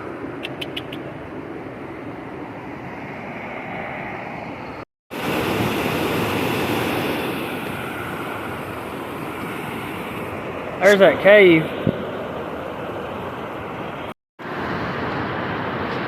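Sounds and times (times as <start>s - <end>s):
water rushing over waterfall: 5.2s - 14.1s.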